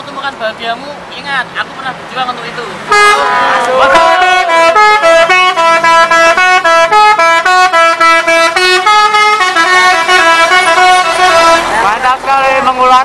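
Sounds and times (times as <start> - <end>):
musical bus air horn: 2.9 - 11.8.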